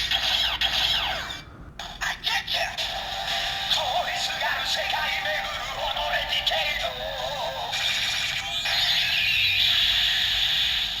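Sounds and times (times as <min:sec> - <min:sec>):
toy synthesized voice: 0:00.1 - 0:10.2
thin toy speaker music: 0:01.8 - 0:09.9.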